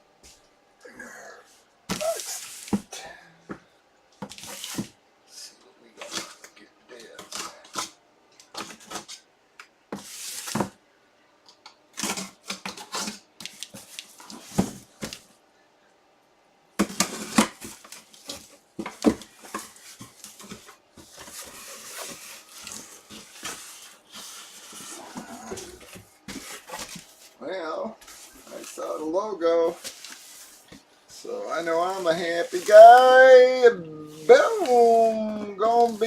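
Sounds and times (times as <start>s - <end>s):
packaging crinkling and rustling: 16.8s - 27.4s, 34.1s - 36.0s.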